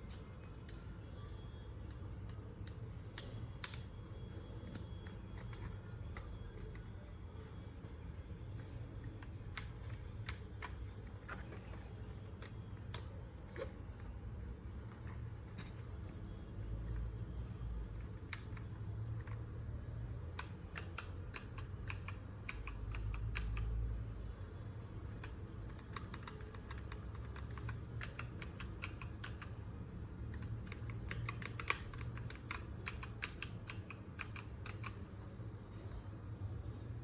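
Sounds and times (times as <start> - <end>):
mechanical keyboard typing: 8.4 - 13.7, 17.8 - 23.9, 25.0 - 35.1.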